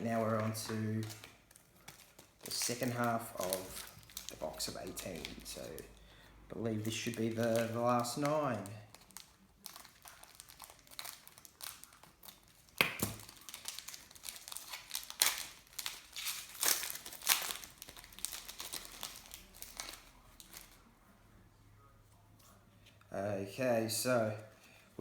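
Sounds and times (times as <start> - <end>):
wrapper tearing and crinkling: 0.0 - 6.0, 6.8 - 20.9.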